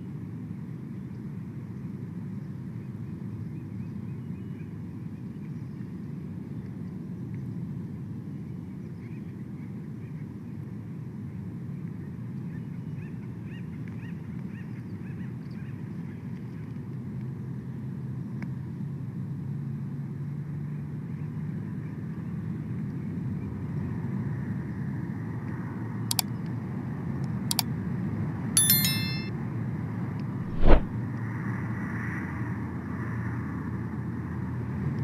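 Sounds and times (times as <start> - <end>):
faint high chirps: 28.6 - 29.3
ringing metallic clang: 28.6 - 29.3.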